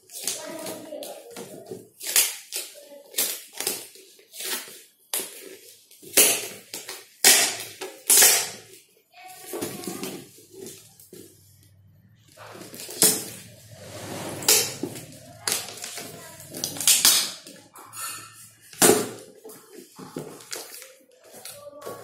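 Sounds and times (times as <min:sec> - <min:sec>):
packaging crinkles and scrapes: 0:12.2 - 0:22.0.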